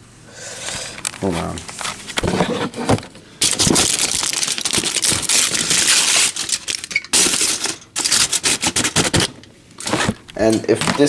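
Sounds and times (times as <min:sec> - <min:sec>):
aluminium foil crinkling: 0:03.4 - 0:11.0.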